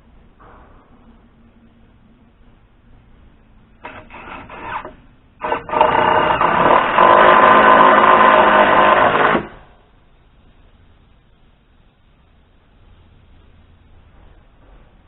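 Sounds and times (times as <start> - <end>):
power tool motor whining: 3.8 - 9.7.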